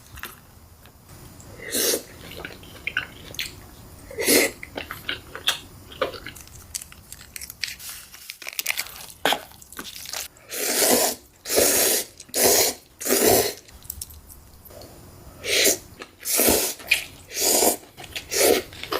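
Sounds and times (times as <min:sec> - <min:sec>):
chewing crunchy food: 0:02.1 - 0:03.8, 0:04.6 - 0:10.3.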